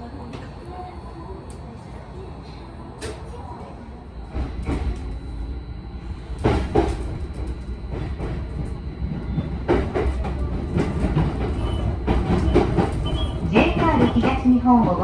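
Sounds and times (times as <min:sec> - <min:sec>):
train low rumble: 0:00.0 - 0:15.0
train clacks and knocks: 0:00.1 - 0:00.8, 0:04.1 - 0:15.0.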